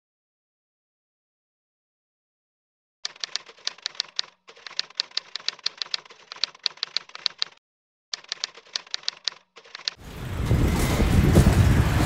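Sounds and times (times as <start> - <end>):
rapid keyboard key clicks: 3.1 - 7.6, 8.2 - 10.0.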